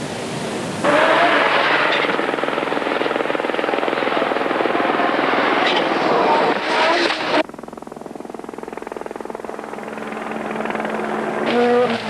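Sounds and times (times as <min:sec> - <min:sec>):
rally car engine revving hard: 0:00.8 - 0:07.4.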